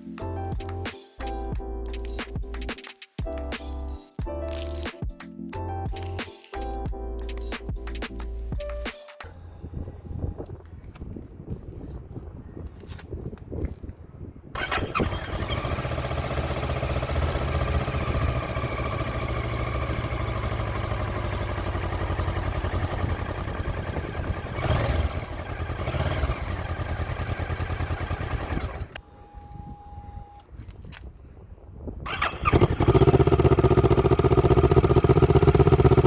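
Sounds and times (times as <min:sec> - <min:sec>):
motorcycle engine idling loud: 0:14.6 - 0:28.9, 0:32.1 - 0:36.0
engine revving blips: 0:14.6 - 0:30.3, 0:32.1 - 0:36.0.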